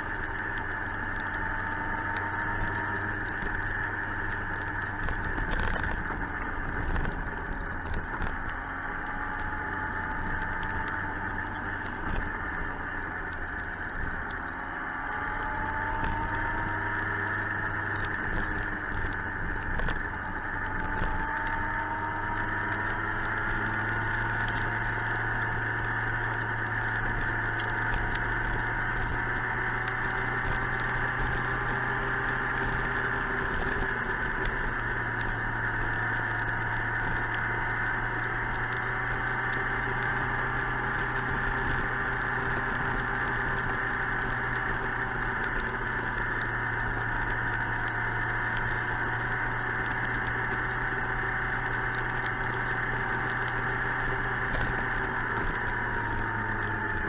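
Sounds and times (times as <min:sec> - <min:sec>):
motorcycle engine running: 0:00.0 - 0:57.0
raindrops ticking on microphone: 0:00.0 - 0:57.0.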